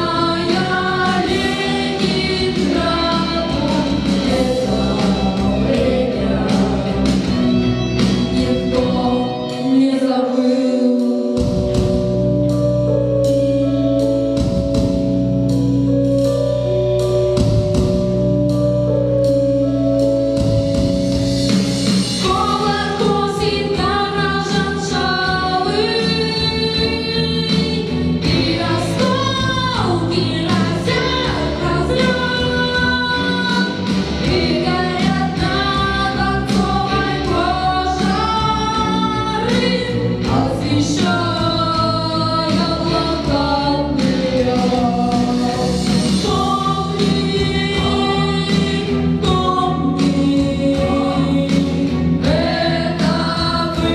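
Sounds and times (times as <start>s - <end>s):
choir singing wordless lines: 0.0s - 7.5s, 22.2s - 53.9s
instrumental accompaniment: 0.0s - 53.9s.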